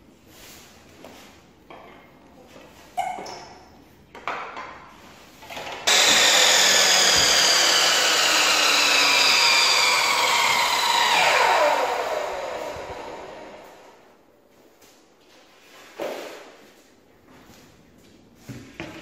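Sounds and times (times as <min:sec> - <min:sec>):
electric saw cutting wood: 0:05.8 - 0:14.0
saw spinning down whine: 0:05.9 - 0:14.1.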